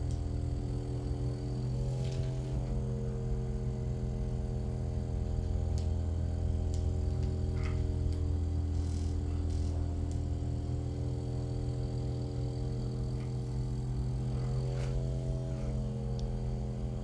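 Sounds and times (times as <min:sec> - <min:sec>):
massage gun buzzing: 0:04.1 - 0:17.0.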